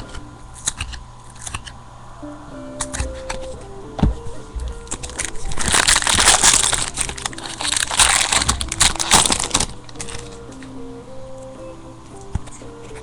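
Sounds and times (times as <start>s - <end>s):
card wrapper crinkling: 4.7s - 10.4s.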